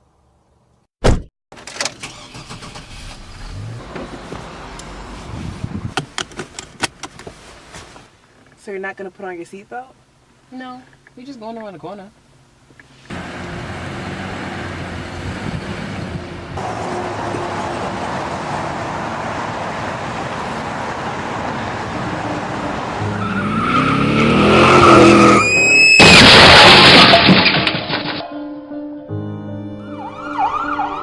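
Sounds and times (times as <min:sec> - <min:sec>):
car road noise: 0:02.0 - 0:08.6, 0:12.2 - 0:27.9
engine revving: 0:02.1 - 0:05.8, 0:13.1 - 0:26.1
tyres squealing in a skid: 0:23.1 - 0:27.6
loud crash: 0:24.8 - 0:28.3.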